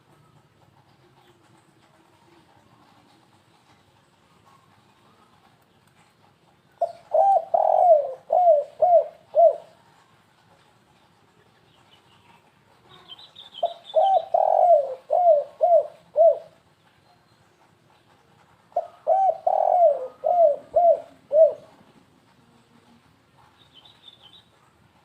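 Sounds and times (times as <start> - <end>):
dove cooing: 6.8 - 9.9, 12.9 - 16.7, 18.7 - 21.9
small bird chirping: 11.5 - 14.6, 23.6 - 24.5.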